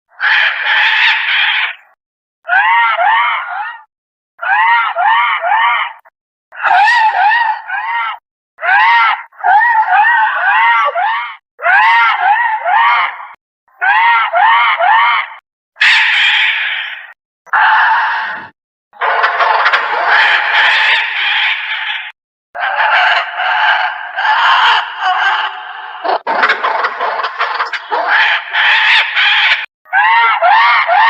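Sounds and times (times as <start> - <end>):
monster bird squawking: 0.2 - 1.8, 19.0 - 31.0.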